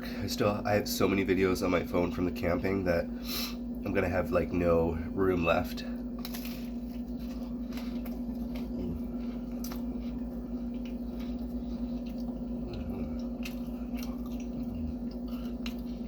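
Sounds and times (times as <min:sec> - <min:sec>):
steady hum: 0:00.0 - 0:16.0
person chewing pizza: 0:05.6 - 0:16.0.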